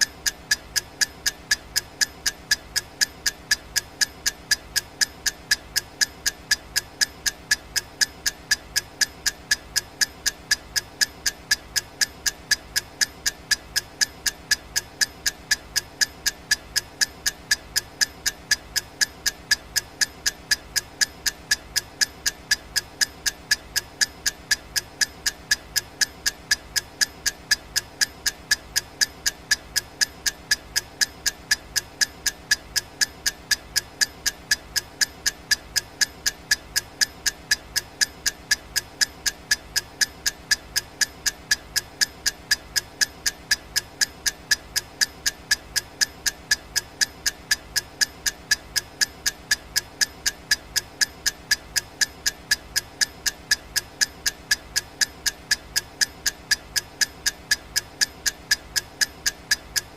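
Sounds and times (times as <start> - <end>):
clock ticking: 0.0 - 59.9.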